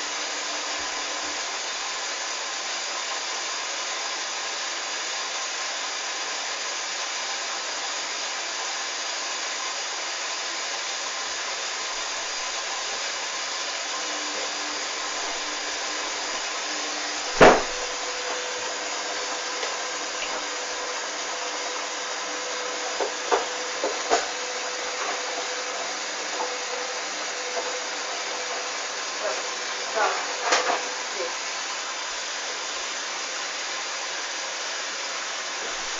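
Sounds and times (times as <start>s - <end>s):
washing machine rushing hiss: 0.0s - 35.9s
washing machine clunk: 17.3s - 18.0s.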